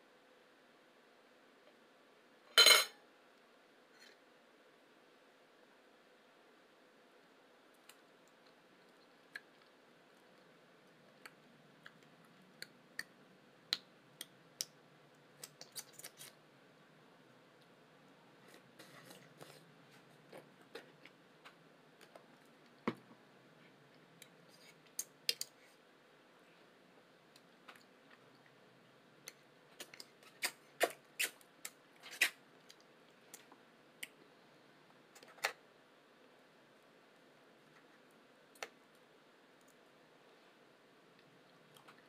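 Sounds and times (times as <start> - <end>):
eating clicks and smacks: 11.2 - 16.3.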